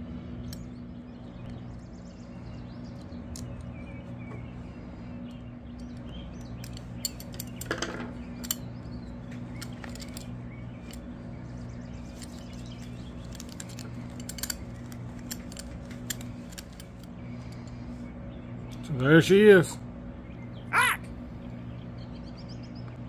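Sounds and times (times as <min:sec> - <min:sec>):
steady low hum: 0:00.0 - 0:23.0
metal belt buckle clicking: 0:12.1 - 0:17.1.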